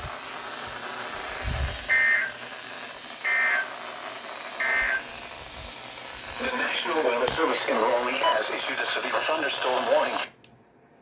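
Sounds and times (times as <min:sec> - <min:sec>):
two-tone digital data bursts: 0:01.9 - 0:02.4, 0:03.2 - 0:03.7, 0:04.6 - 0:05.1.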